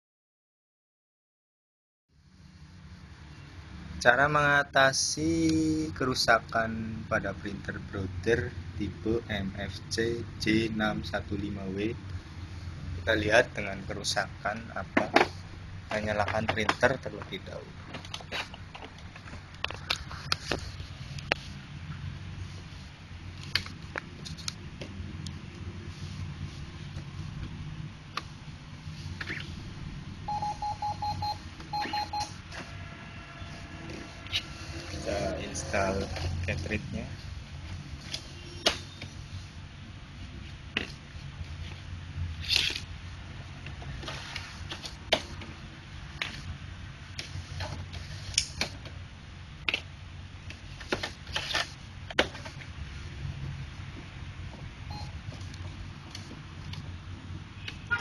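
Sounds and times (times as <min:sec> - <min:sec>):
steady low hum: 0:02.2 - 0:57.9
quick electronic beeps: 0:30.3 - 0:32.3.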